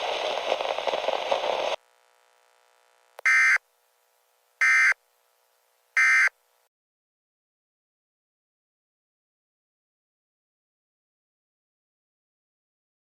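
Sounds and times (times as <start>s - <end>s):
steady noisy hiss: 0.0s - 6.7s
digital data tone bursts: 3.2s - 3.6s, 4.6s - 5.0s, 6.0s - 6.4s.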